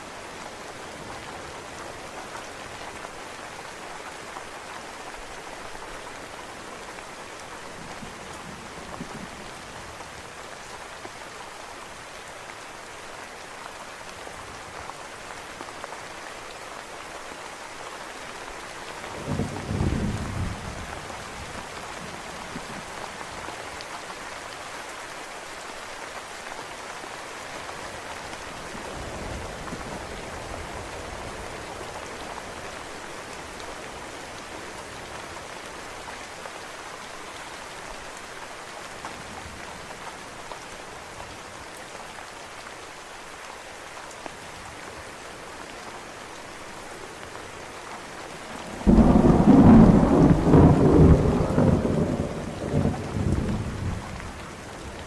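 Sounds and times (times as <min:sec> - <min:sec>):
steady rain falling: 0:00.0 - 0:55.0
thunder clap with deep rumble: 0:48.8 - 0:54.2.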